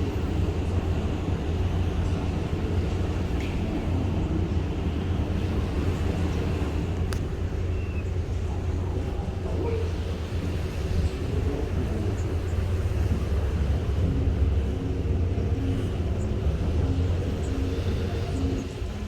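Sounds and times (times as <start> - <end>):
ship engines rumbling: 0.0 - 19.0
wind buffeting microphone: 0.0 - 19.0.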